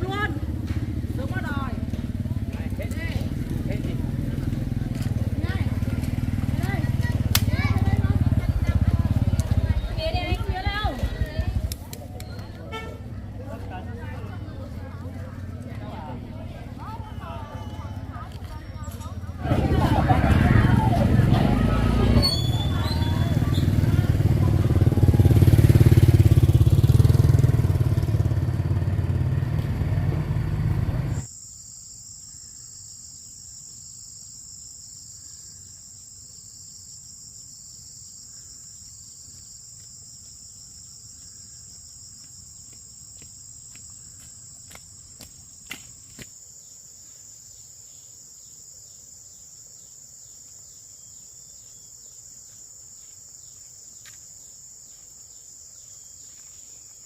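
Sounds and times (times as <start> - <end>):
motor engine running loudly: 19.4 - 31.3
insect chirring: 31.2 - 57.0.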